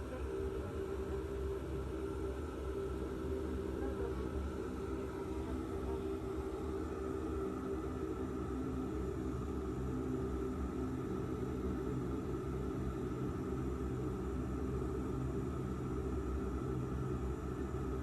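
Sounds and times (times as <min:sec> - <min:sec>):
airliner cabin engine drone: 0:00.0 - 0:18.0.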